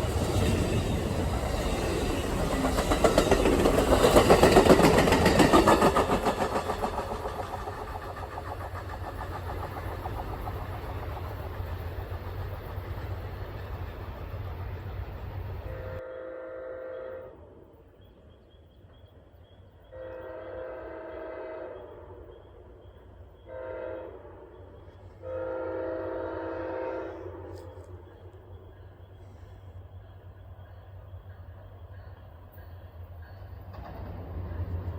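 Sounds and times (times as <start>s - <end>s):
train engine rumbling: 0.0s - 34.9s
locomotive horn blasts: 15.6s - 17.4s, 19.9s - 22.0s, 23.5s - 24.6s, 25.2s - 27.8s.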